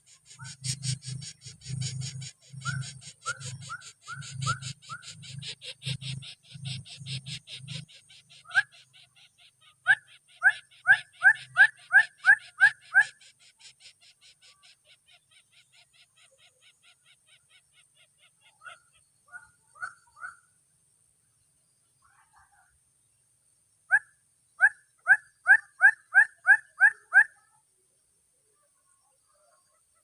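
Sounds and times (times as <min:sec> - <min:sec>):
short rising squeaky calls: 0:00.0 - 0:20.5.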